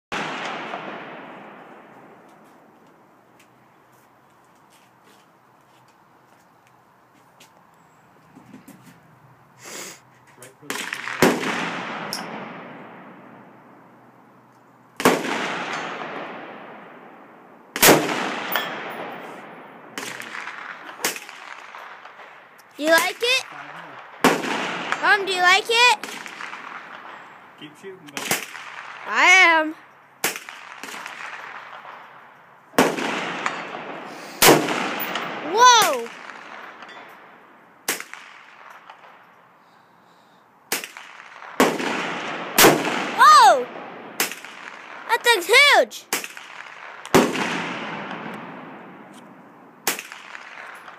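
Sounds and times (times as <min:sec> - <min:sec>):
quieter bangs: 0:00.1 - 0:02.7, 0:10.6 - 0:13.8, 0:15.0 - 0:27.6, 0:30.2 - 0:39.3, 0:40.7 - 0:50.9
rifle shots with rolling echo: 0:00.1 - 0:03.2, 0:10.6 - 0:14.2, 0:15.0 - 0:39.4, 0:40.7 - 0:50.9.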